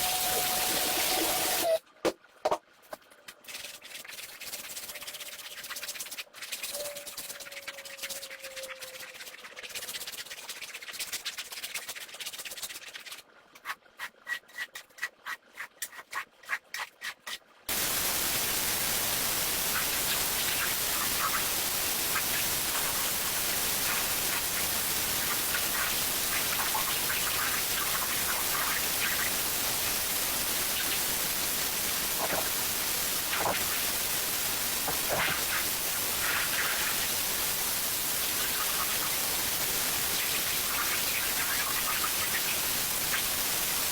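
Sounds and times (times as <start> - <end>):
spraying water hiss: 0.0 - 1.8, 17.7 - 43.9
brush scrubbing rug: 30.8 - 37.1.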